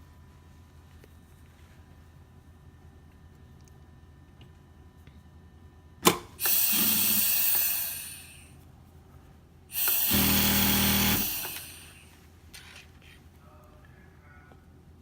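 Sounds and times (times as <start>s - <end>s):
steady motor hum: 0.0s - 12.3s
sharp click: 6.0s - 6.6s
sewing machine hissing rush: 6.4s - 8.5s, 9.7s - 12.1s.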